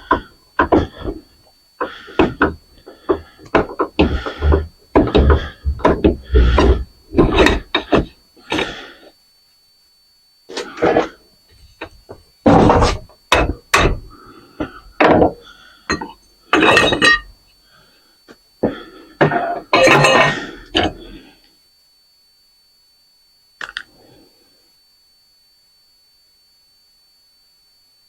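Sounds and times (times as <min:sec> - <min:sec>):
hammer striking metal parts: 0:12.5 - 0:14.0, 0:15.9 - 0:17.3, 0:19.3 - 0:21.0.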